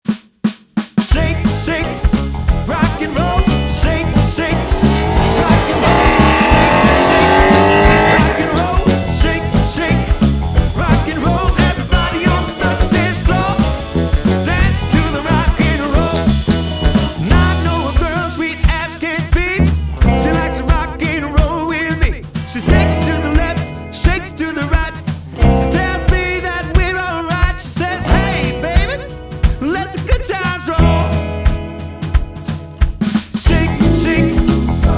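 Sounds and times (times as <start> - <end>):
rock music with steady beat: 0.8 - 34.9
rising tones: 1.3 - 24.0.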